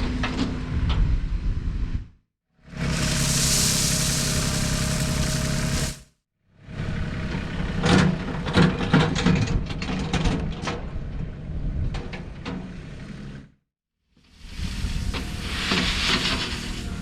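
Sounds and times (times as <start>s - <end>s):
tractor engine running: 2.7s - 6.0s.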